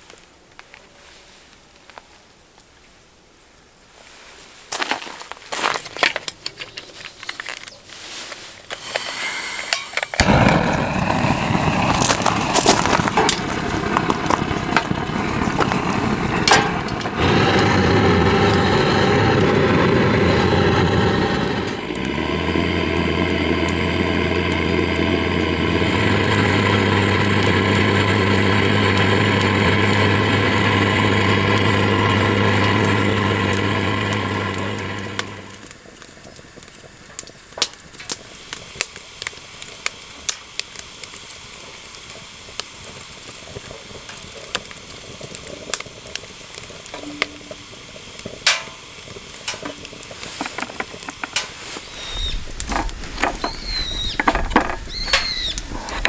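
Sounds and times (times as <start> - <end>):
small motor running: 10.2 - 35.7, 51.8 - 56.0.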